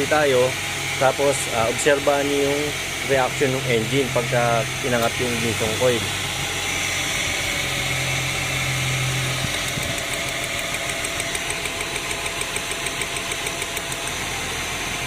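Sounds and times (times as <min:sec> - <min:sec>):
car engine idling roughly: 0:00.0 - 0:15.0.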